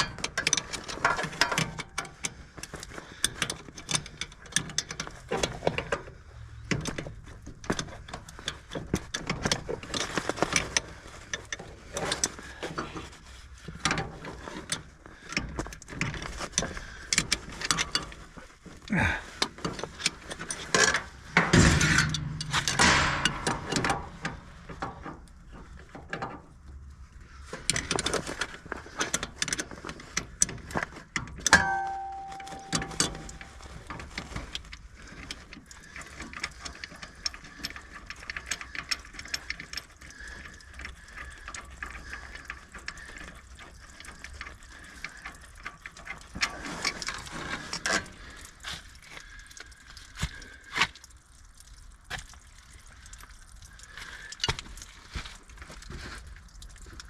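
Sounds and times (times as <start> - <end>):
wrench clanking on metal: 20.6 - 25.0, 31.4 - 33.5
ringing metal clank: 21.4 - 24.0, 31.5 - 33.5.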